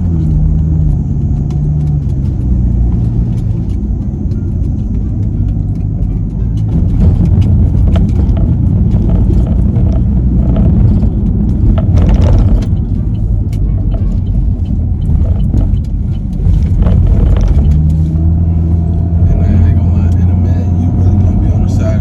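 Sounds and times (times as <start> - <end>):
car engine and tyres rumbling: 0.0 - 22.0.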